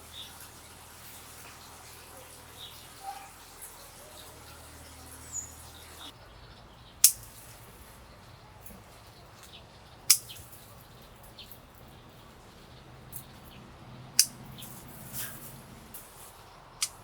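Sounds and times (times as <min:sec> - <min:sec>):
pruning shears snipping stems: 0:07.0 - 0:17.0.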